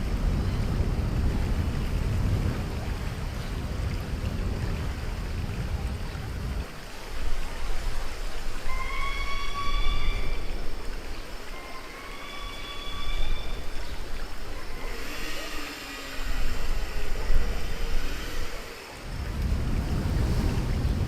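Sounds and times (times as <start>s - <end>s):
rushing splashing water: 0.0s - 21.0s
low rumble: 19.0s - 21.0s.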